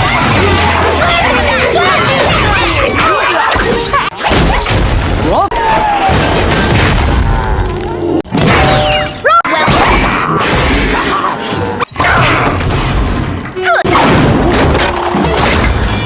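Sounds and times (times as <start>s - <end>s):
cartoon booms and crashes: 4.3s - 7.6s, 11.9s - 16.0s
music: 12.0s - 16.0s.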